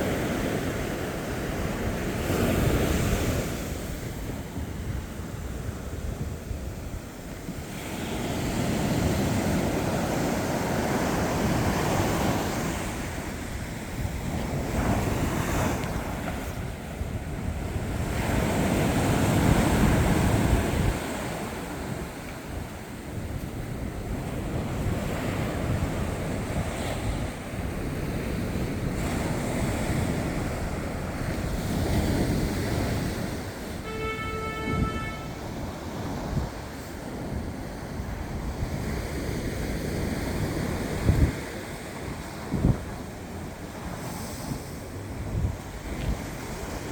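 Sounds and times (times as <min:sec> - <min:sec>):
sea waves breaking on beach: 0:00.0 - 0:46.9
wind buffeting microphone: 0:00.0 - 0:46.9.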